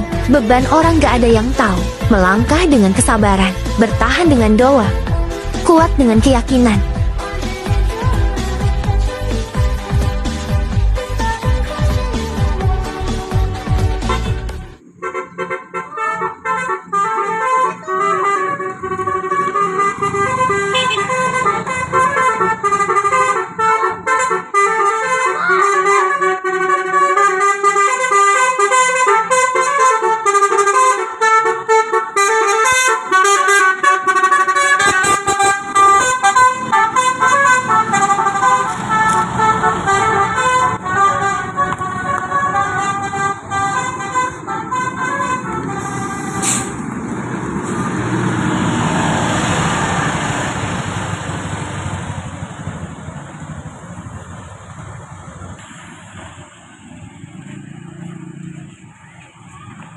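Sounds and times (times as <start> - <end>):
musical air horn tune: 0.0 - 46.8
vehicle noise: 0.0 - 59.9.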